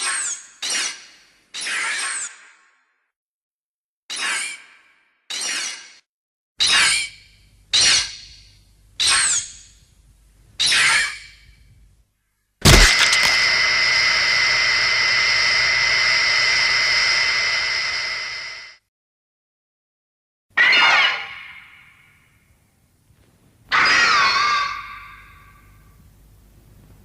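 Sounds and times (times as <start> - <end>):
sharp hit: 12.6 - 13.8
long high screech: 12.7 - 18.8
high creature shrieks: 23.7 - 24.8.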